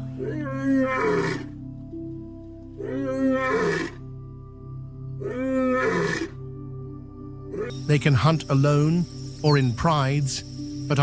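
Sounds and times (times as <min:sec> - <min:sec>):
lion roaring: 0:00.0 - 0:01.6, 0:02.8 - 0:04.0, 0:05.2 - 0:06.4
background music sustained notes: 0:00.0 - 0:11.0.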